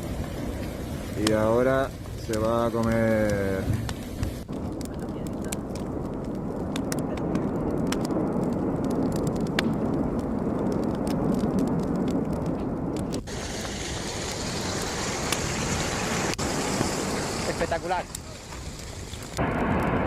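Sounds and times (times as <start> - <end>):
sharp crackles: 0.0 - 20.0
volcano rumbling: 0.0 - 20.0.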